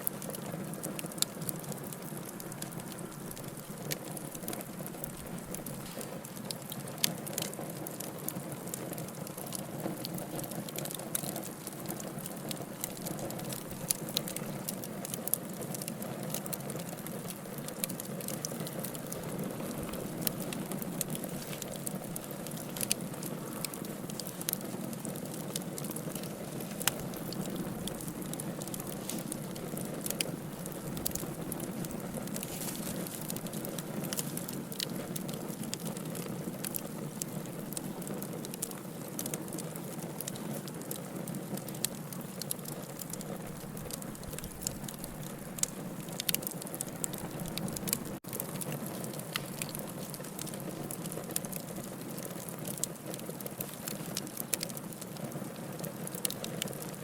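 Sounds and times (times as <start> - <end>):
campfire flame rushing: 0.0 - 57.0
fire crackling: 0.0 - 57.0
sharp fire pops: 9.0 - 39.4.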